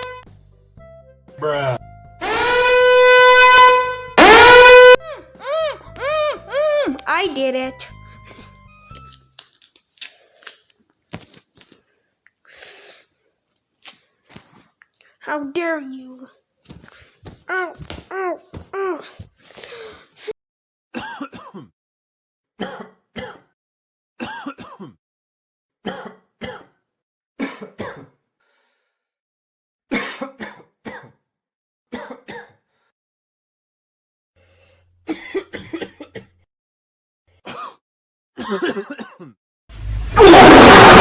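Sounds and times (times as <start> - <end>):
person coughing: 21.0 - 21.7, 22.6 - 23.5, 24.2 - 25.0, 25.8 - 26.7, 27.4 - 28.2, 29.9 - 31.2, 31.9 - 32.6, 35.1 - 36.4, 37.4 - 37.8, 38.4 - 39.4
person clearing throat: 21.0 - 21.8, 22.6 - 23.5, 24.2 - 25.0, 25.8 - 26.7, 27.4 - 28.2, 31.9 - 32.6, 37.4 - 37.8, 38.4 - 39.4.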